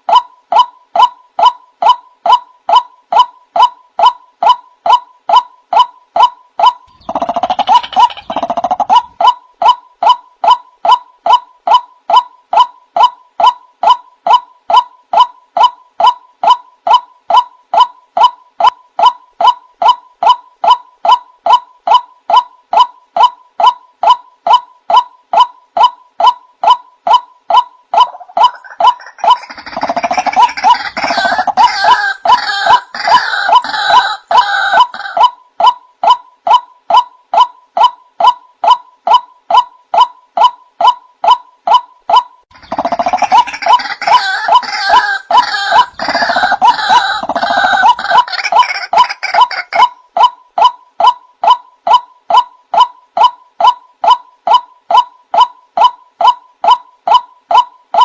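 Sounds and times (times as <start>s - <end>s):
waterhen calling: 6.9s - 9.2s, 28.0s - 35.3s, 42.6s - 50.0s.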